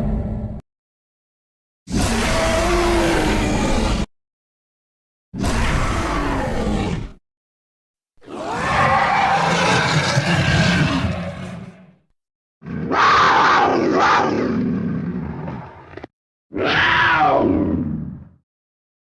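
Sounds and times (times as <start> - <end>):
growling dinosaur roars: 1.9 - 4.1, 5.4 - 7.2, 8.2 - 12.0, 12.6 - 18.4.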